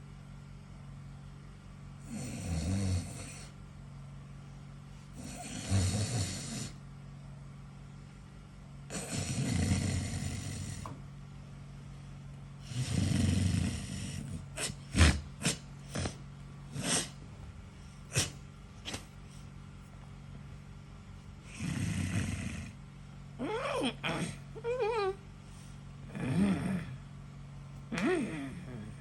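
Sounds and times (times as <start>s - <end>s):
man snoring: 2.0s - 3.6s, 5.1s - 6.8s, 8.9s - 10.9s, 12.6s - 17.1s, 21.5s - 22.8s, 26.1s - 27.0s, 27.9s - 29.0s.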